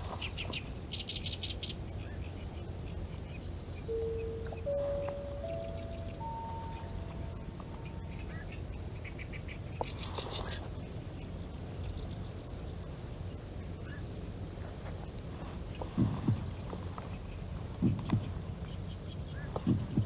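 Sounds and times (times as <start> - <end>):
bird calls: 0.0 - 20.0
steady low rumble: 0.0 - 20.0.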